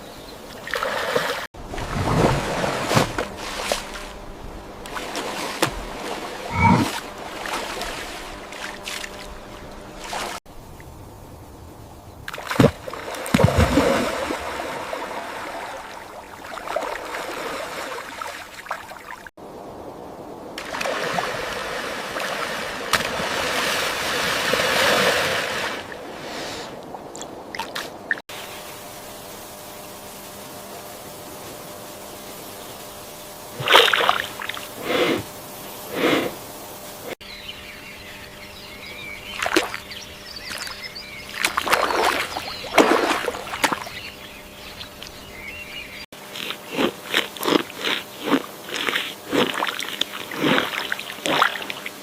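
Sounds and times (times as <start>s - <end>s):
heavy water splashes: 0.6s - 10.4s, 12.3s - 19.3s, 20.6s - 28.2s, 33.6s - 35.0s, 39.2s - 44.1s, 46.8s - 52.0s
water splashing and trickling: 0.6s - 10.9s, 12.3s - 19.3s, 20.6s - 28.3s, 33.6s - 34.8s, 39.2s - 44.2s, 47.1s - 52.0s.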